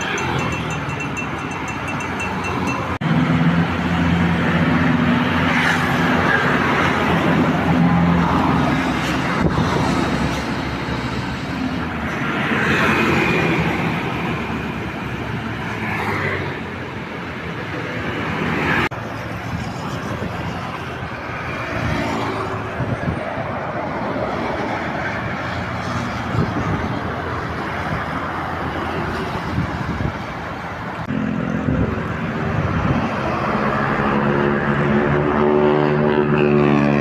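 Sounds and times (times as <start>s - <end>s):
passing vehicles: 0.0s - 37.0s
steady engine drone: 30.9s - 37.0s.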